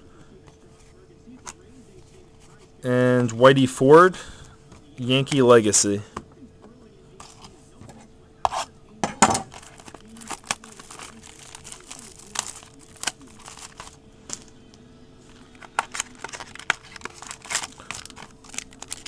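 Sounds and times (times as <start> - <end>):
wrapper crinkling and tearing: 9.5 - 14.5, 15.3 - 19.0.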